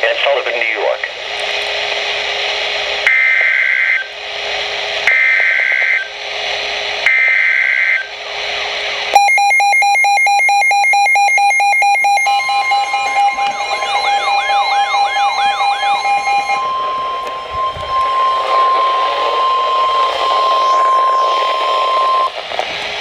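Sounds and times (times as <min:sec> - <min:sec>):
radio static hiss: 0:00.0 - 0:09.2, 0:11.3 - 0:23.0
electronic alarm beeping rapidly: 0:09.2 - 0:22.3
digital data tone bursts: 0:09.2 - 0:22.4.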